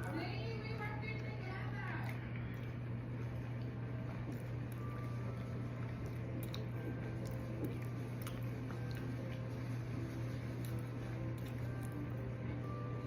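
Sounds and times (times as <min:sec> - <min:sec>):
steady low hum: 0:00.0 - 0:13.0
chewing mouth clicks and smacks: 0:02.0 - 0:09.8, 0:10.4 - 0:12.2.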